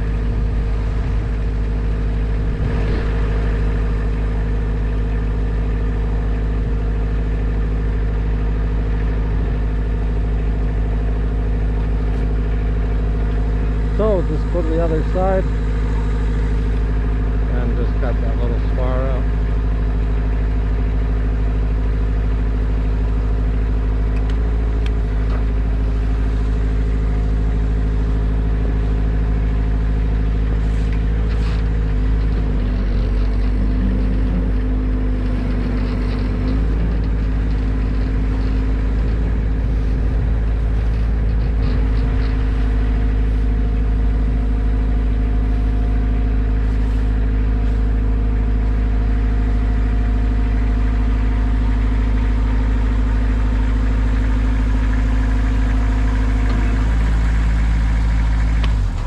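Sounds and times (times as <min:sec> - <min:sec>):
large engine idling: 0:00.0 - 0:59.0.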